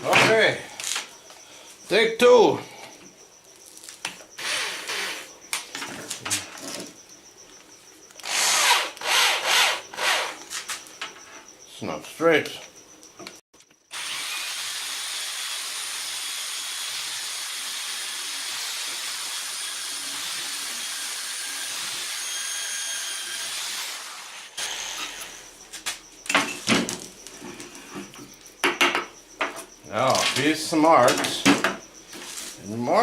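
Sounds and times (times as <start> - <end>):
electric drill boring into wood: 4.4 - 5.3, 8.2 - 10.4, 13.9 - 25.4
knocks of tool handling: 25.8 - 32.4.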